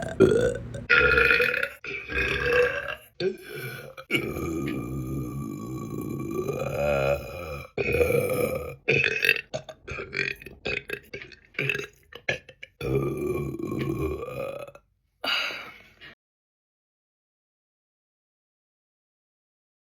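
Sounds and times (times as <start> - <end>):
woman belching: 0.0 - 15.6.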